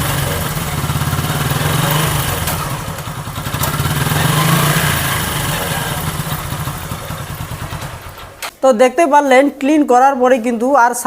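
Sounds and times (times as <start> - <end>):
motorcycle engine running: 0.0 - 8.5.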